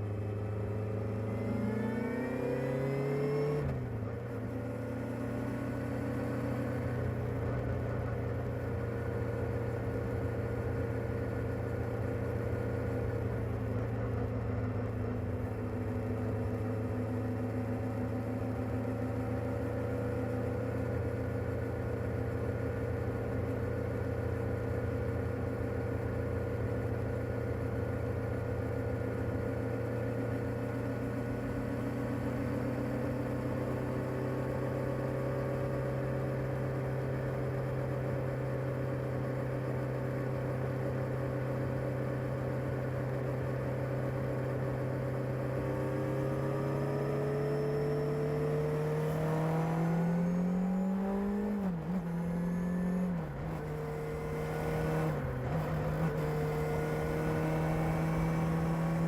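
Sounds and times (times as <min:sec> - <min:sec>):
motorcycle engine revving: 0:48.3 - 0:59.0.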